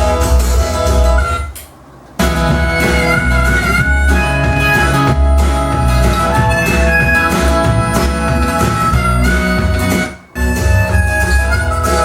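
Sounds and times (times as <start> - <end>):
instrumental pop music: 0.0 - 12.0.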